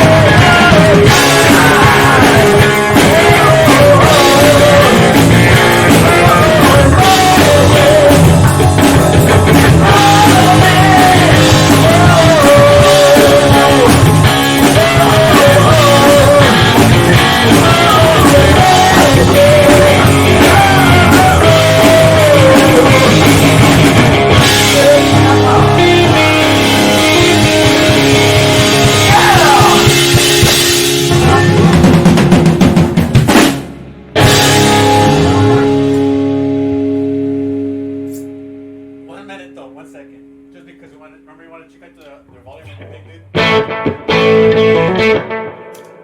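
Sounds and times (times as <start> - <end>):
lead vocal singing: 0.0 - 8.6, 9.4 - 32.0
rock band playing live: 0.0 - 39.2, 43.3 - 46.0.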